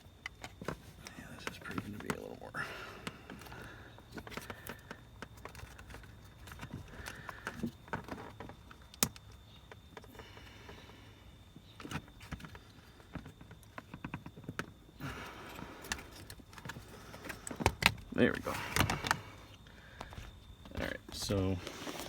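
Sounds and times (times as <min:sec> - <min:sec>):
hard plastic clicking and scraping: 0:00.1 - 0:02.4, 0:03.0 - 0:10.1, 0:15.5 - 0:22.0.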